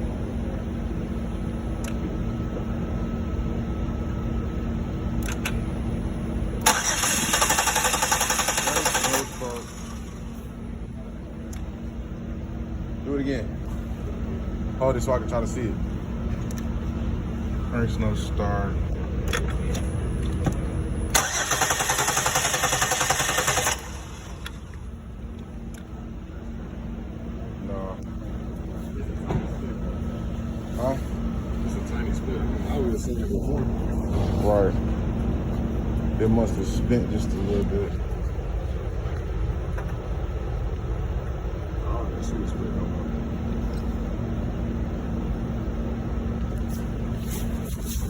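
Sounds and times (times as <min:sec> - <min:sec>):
car engine cranking: 0:06.6 - 0:10.2, 0:19.2 - 0:24.8
low hum: 0:23.7 - 0:48.0.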